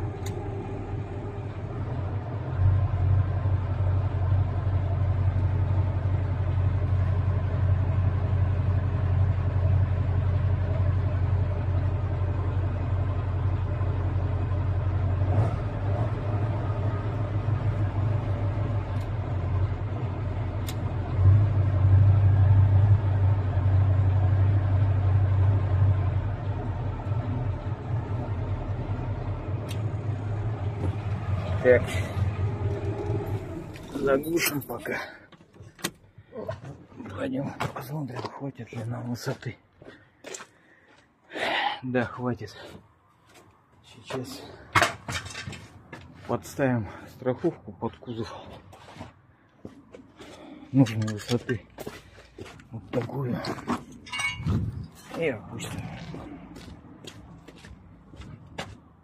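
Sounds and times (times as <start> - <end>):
truck diesel engine running: 0.0 - 35.2, 50.3 - 58.7.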